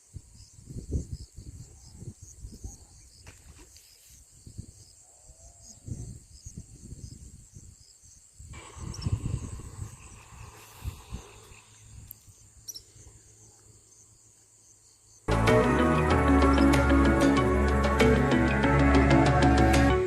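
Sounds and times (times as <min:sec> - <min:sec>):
crickets chirring: 0:00.0 - 0:15.3.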